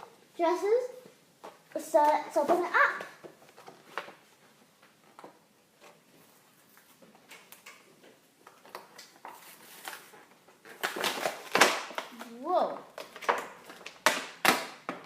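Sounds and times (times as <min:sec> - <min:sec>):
packaging clicks and crinkles: 0:08.4 - 0:12.3.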